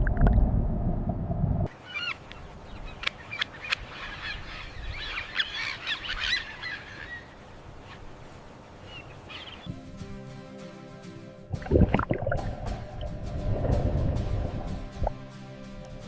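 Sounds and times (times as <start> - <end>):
birds chirping and squawking: 1.7 - 8.0, 8.8 - 9.7.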